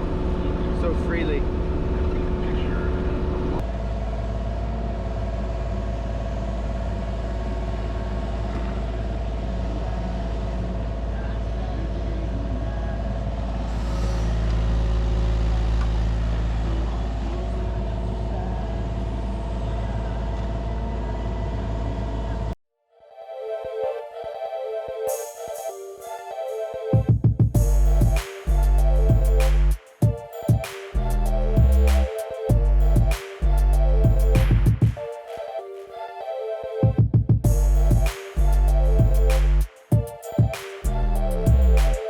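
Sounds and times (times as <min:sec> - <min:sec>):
diesel engine running: 0:00.0 - 0:22.6, 0:27.6 - 0:29.8, 0:31.0 - 0:34.8, 0:37.5 - 0:39.7, 0:40.9 - 0:42.0.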